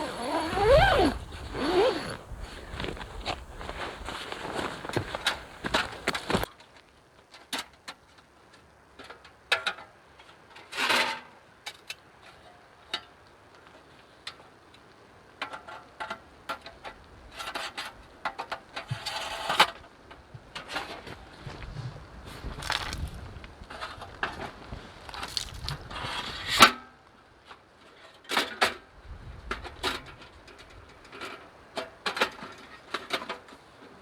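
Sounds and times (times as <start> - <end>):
rustling: 0.0 - 6.5, 21.0 - 26.4.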